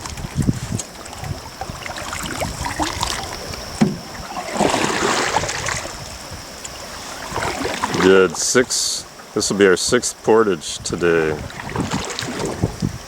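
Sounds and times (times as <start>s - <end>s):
swish of water: 0.0s - 6.1s, 6.8s - 8.4s, 11.3s - 12.8s
paddles splashing through water: 0.0s - 13.0s.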